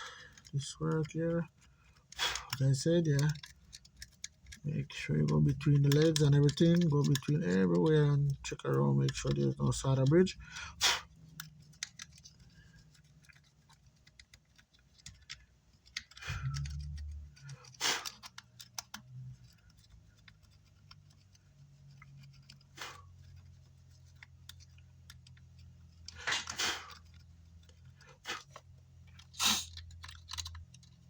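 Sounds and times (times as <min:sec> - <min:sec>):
metal tools clicking and scraping: 0:00.0 - 0:31.0
steady low hum: 0:16.2 - 0:18.0.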